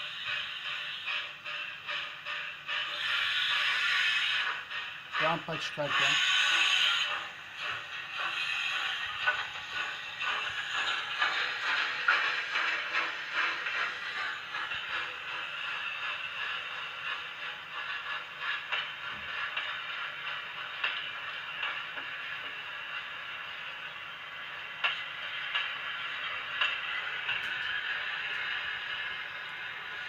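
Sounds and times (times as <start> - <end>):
steam locomotive chuffing: 0.0 - 30.0.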